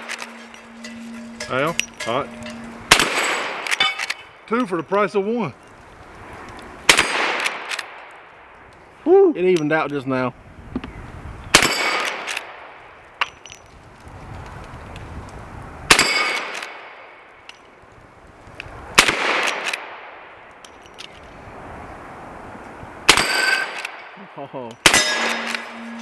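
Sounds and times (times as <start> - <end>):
rifle shots with echo: 2.9 - 3.8, 6.9 - 8.0, 11.5 - 12.6, 19.0 - 20.2, 23.1 - 24.0.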